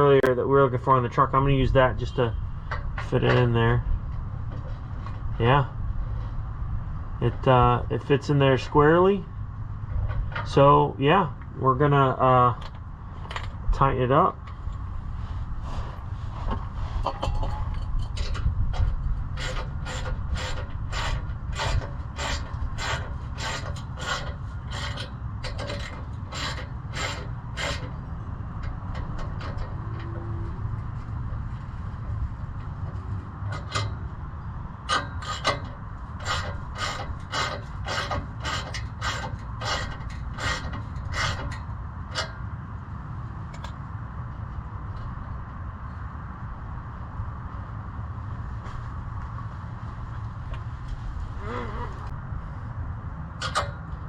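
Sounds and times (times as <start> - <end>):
ratchet wrench rasping: 19.3 - 28.0, 34.9 - 42.3.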